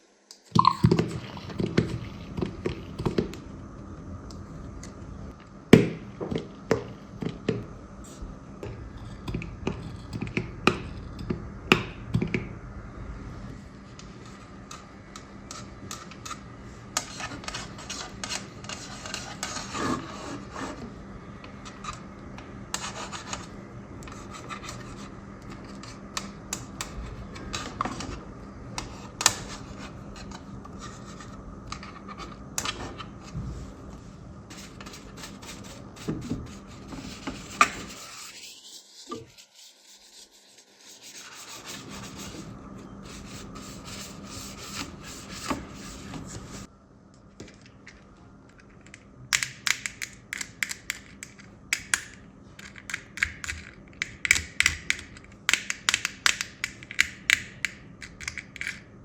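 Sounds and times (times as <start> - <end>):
hands rubbing plastic toy: 34.5 - 42.5.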